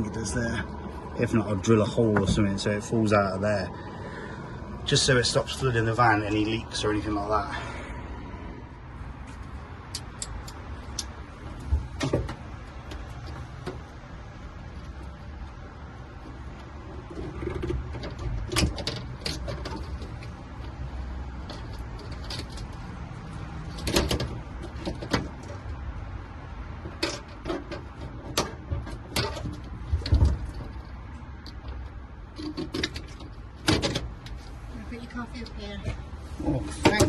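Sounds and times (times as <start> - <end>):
steady low rumble: 0.0 - 27.0
scattered clicks and knocks: 9.2 - 26.0, 26.6 - 34.6.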